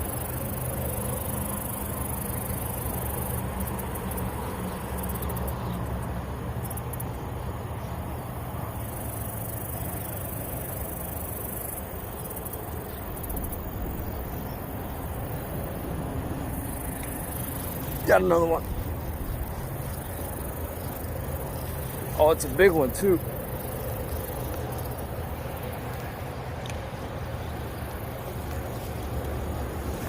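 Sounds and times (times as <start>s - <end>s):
insects chirping: 0.0s - 30.0s
steady low hum: 0.0s - 30.0s.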